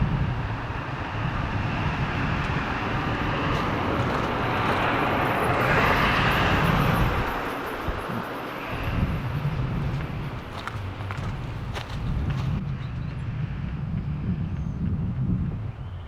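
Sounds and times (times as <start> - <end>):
passing vehicle rushing: 0.0 - 12.6.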